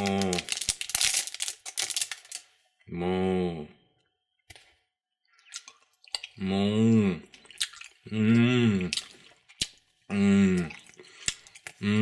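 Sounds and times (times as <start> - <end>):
plastic candy wrapper crinkling: 0.0 - 2.5
person humming: 8.1 - 8.9, 10.1 - 10.7.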